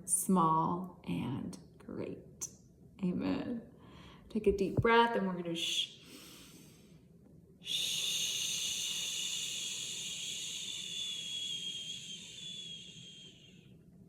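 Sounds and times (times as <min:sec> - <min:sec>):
woman exhaling shh: 0:07.6 - 0:13.7.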